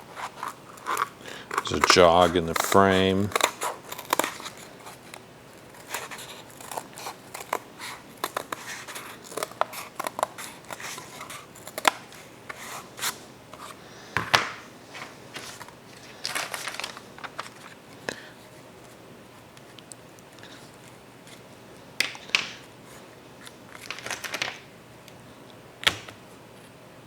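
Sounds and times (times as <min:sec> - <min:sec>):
scissors cutting cardboard: 0:00.0 - 0:13.7.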